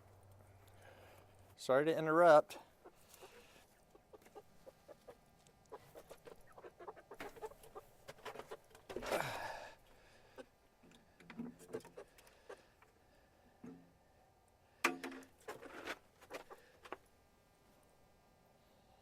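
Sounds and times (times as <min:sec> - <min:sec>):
chickens clucking softly: 0:02.5 - 0:09.1, 0:10.3 - 0:13.0, 0:15.4 - 0:17.0
chicken squawk: 0:02.7 - 0:08.6.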